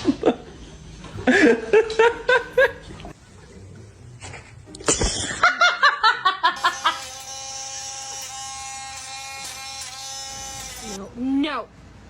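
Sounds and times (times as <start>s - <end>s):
person laughing: 4.9s - 7.0s.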